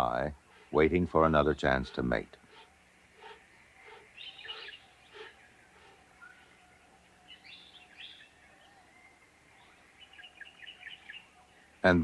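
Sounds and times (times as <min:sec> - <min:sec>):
high bird chirps: 0:02.5 - 0:11.4.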